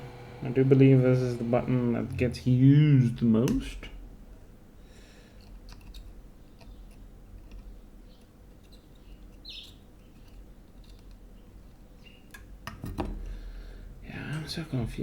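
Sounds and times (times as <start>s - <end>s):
steady low hum: 0.0s - 5.5s.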